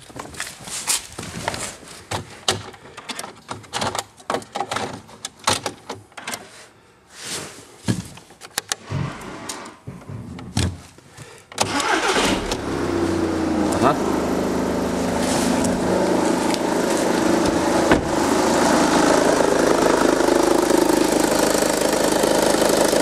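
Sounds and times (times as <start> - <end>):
diesel engine starting: 11.6 - 23.0
clicks and knocks of car door: 17.9 - 18.1.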